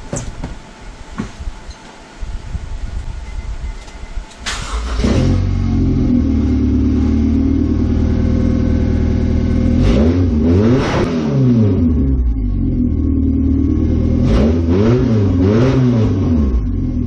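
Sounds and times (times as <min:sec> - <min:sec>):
car engine idling and revving: 0:04.4 - 0:17.0.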